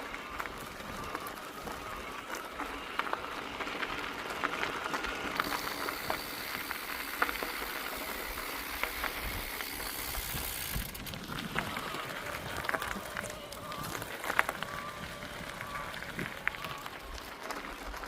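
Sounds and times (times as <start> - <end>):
bike clicks and rattles: 0.0 - 18.0
bike tyre noise: 0.0 - 18.0
wind hiss: 5.4 - 12.8.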